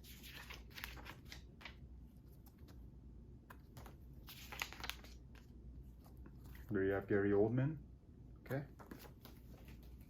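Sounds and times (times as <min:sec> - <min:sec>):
paper pages turning: 0:00.0 - 0:02.8, 0:03.5 - 0:06.8, 0:08.8 - 0:10.0.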